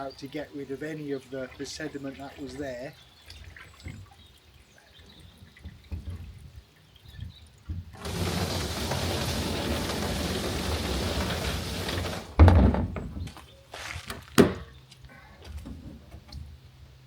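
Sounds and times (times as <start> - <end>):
water rushing in plastic tank: 7.7 - 12.5
heavy thunk: 12.4 - 13.2.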